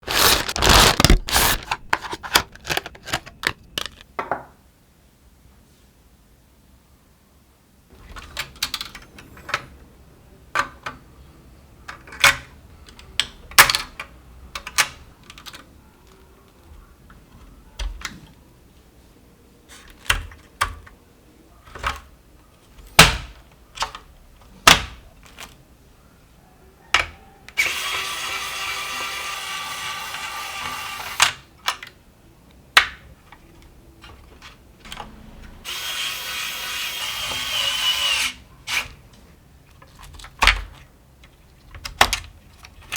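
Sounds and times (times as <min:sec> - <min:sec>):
computer parts clicking and knocking: 0:00.0 - 0:04.4.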